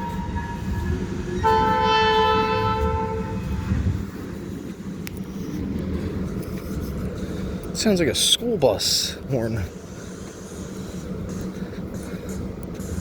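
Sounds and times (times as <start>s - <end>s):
locomotive air horn: 0.0s - 3.9s.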